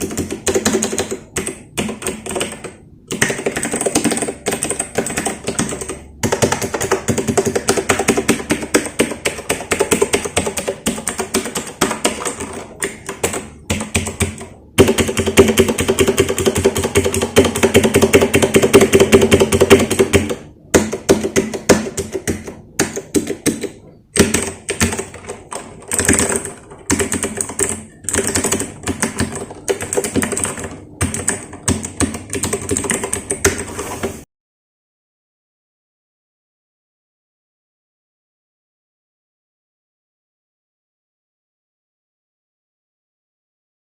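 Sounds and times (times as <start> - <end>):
mechanical keyboard typing: 0.0 - 34.2.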